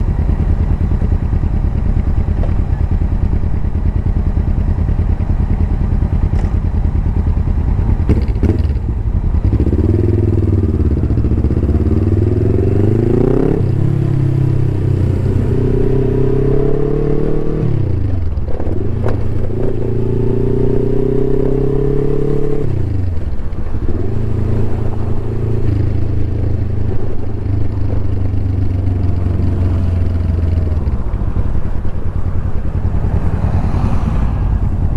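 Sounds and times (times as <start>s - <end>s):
motorcycle engine idling: 0.0s - 13.0s, 25.9s - 34.9s
motorcycle engine revving through gears: 0.0s - 34.9s.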